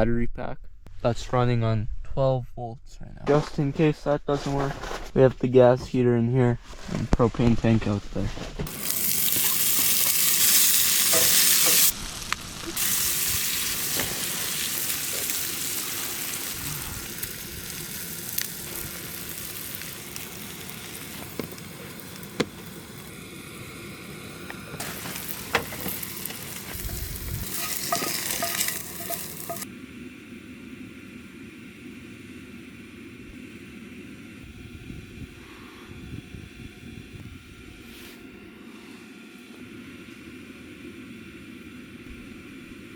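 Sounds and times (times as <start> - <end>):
hissing sizzling noise: 8.7 - 37.0.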